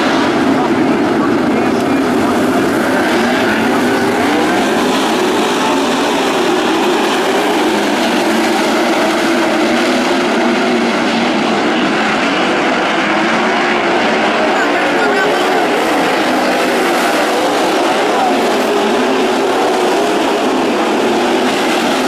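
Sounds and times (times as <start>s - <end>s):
race car engines roaring: 0.0s - 22.0s.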